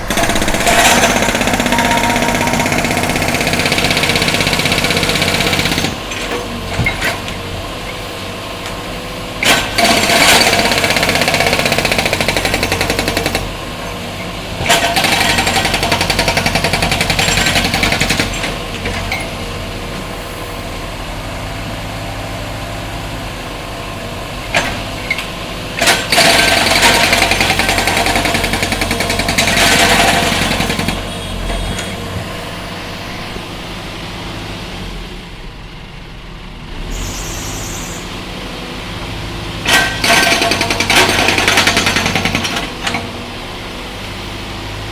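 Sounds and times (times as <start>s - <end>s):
machine engine running: 0.0s - 6.0s
concrete breaker hammering road: 0.0s - 7.5s, 9.3s - 19.4s, 24.5s - 32.4s, 39.6s - 43.2s.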